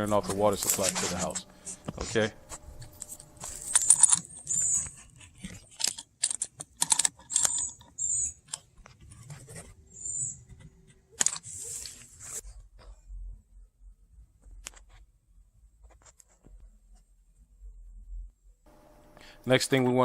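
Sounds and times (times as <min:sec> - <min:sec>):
faint steady hum: 0:00.0 - 0:06.7, 0:11.9 - 0:20.0
sharp handling clicks and knocks: 0:00.0 - 0:09.2.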